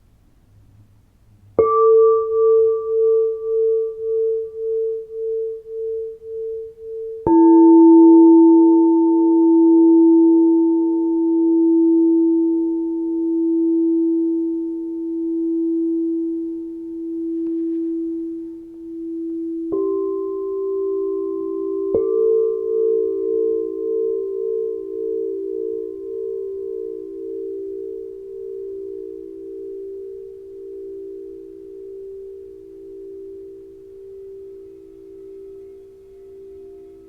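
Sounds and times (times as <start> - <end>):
crystal singing bowls ringing: 1.6 - 37.0.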